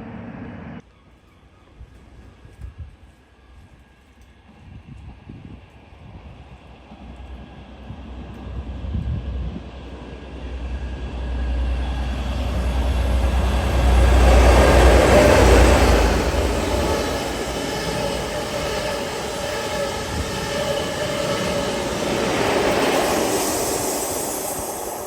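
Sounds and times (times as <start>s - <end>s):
diesel train engine rumble: 2.8s - 25.0s
wheels on rails: 8.2s - 25.0s.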